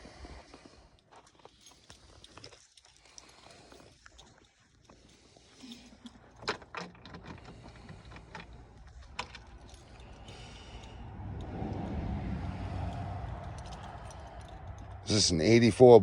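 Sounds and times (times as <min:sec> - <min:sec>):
keys jangling and clicking: 0:01.0 - 0:12.0, 0:12.6 - 0:15.2
low hum: 0:08.7 - 0:15.4.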